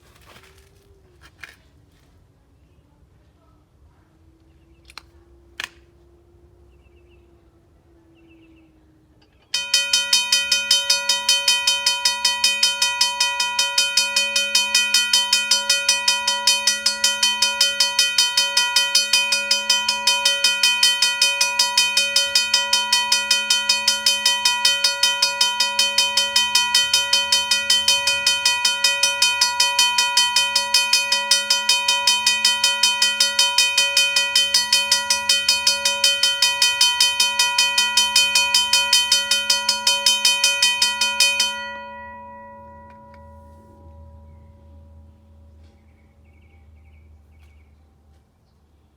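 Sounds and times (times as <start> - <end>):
railroad crossing bell ringing: 9.3 - 48.2.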